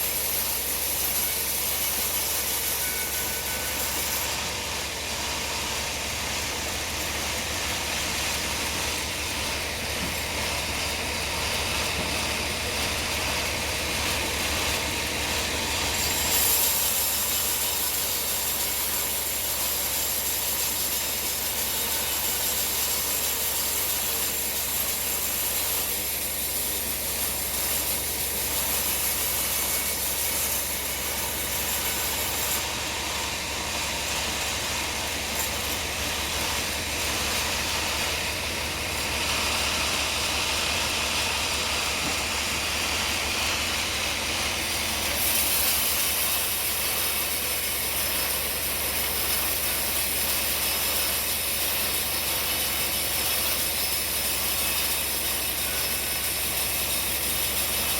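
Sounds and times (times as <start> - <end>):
high hiss of saw cutting: 0.0 - 9.0, 15.9 - 57.9
log saw motor hum: 0.0 - 57.8.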